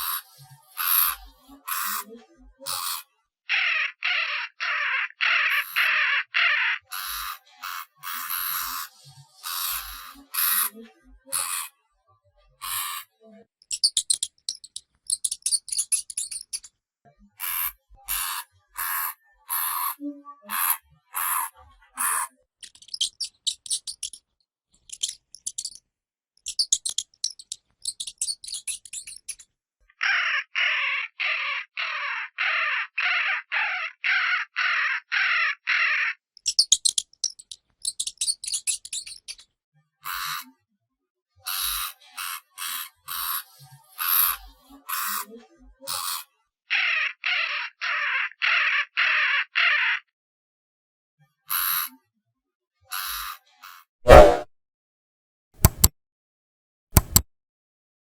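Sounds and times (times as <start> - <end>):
hamster squeaking: 0.0 - 11.7, 12.6 - 16.7, 17.4 - 24.2, 24.8 - 25.8, 26.4 - 29.4, 36.4 - 39.4, 40.1 - 40.5, 41.5 - 45.3, 45.9 - 46.2, 51.5 - 51.9, 52.9 - 53.4, 54.1 - 54.5.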